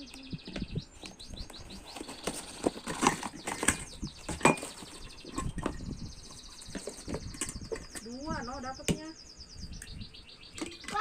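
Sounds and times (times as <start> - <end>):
packaging rustling and crackling: 1.8 - 5.1.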